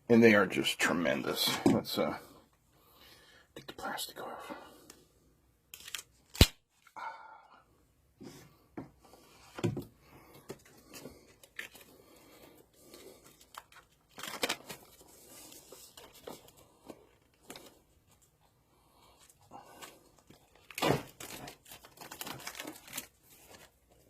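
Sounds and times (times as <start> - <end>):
plastic wrapping crinkling: 12.8 - 18.2, 19.8 - 24.0.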